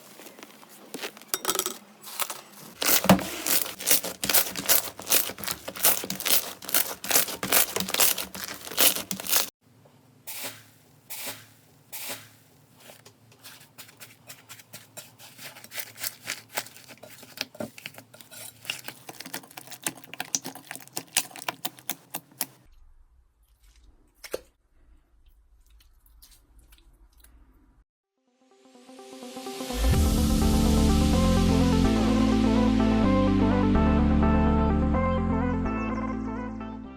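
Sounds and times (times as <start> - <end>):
slime crackling and popping: 2.8 - 9.5, 15.8 - 22.6.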